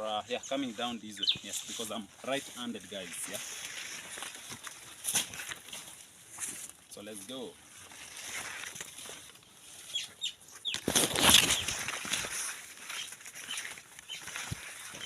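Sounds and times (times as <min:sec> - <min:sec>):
leaves and branches rustling: 0:00.0 - 0:15.0
blade cutting into bushes: 0:10.8 - 0:13.1.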